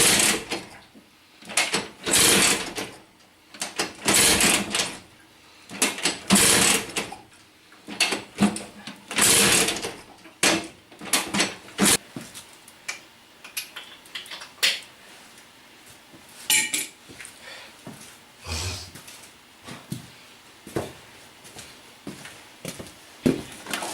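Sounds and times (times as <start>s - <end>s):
scooter engine kick-start: 0.0s - 0.6s, 2.1s - 2.8s, 4.0s - 5.0s, 6.3s - 7.1s, 9.2s - 9.9s.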